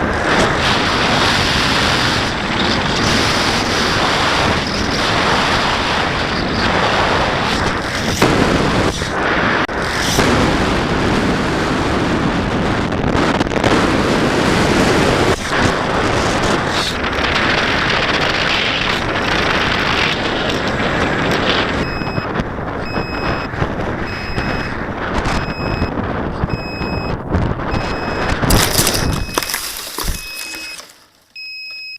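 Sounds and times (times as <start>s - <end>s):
wind buffeting microphone: 0.0s - 30.3s
faint short beep: 31.4s - 31.9s.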